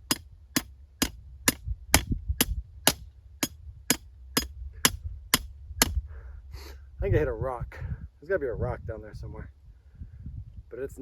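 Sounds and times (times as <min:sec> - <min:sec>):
hammer striking fence post: 0:00.0 - 0:06.0.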